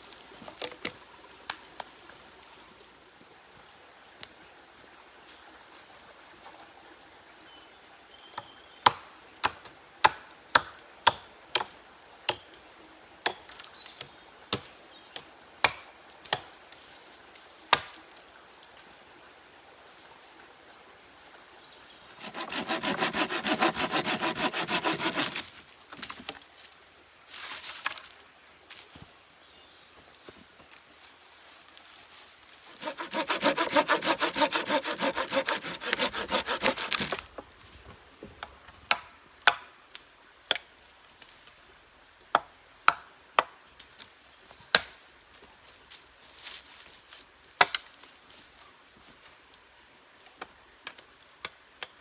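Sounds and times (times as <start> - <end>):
hand sawing through wood: 22.2 - 25.6, 32.7 - 37.3.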